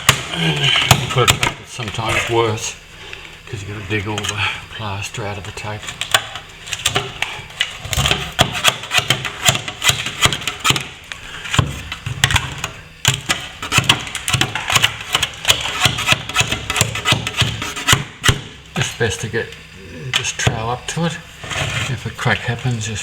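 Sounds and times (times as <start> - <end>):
hand tool scraping plaster: 0.0 - 2.6, 5.4 - 12.0, 13.1 - 19.2, 20.2 - 22.9.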